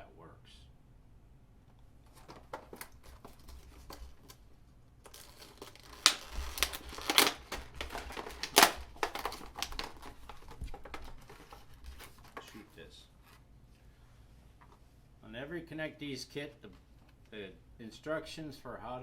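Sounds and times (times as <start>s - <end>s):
crinkling and rustling: 1.7s - 13.5s.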